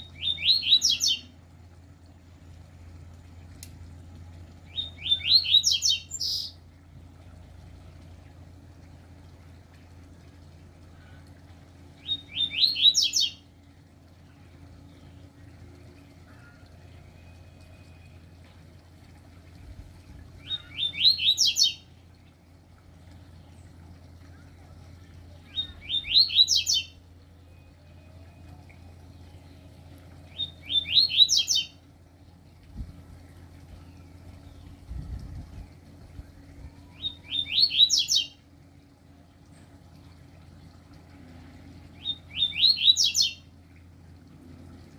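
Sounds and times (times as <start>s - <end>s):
songbird singing chirped notes: 0.0s - 1.4s, 4.6s - 6.6s, 12.0s - 13.6s, 20.4s - 22.0s, 23.4s - 31.9s, 36.7s - 38.4s, 41.9s - 43.6s
faint steady hum: 0.0s - 44.9s.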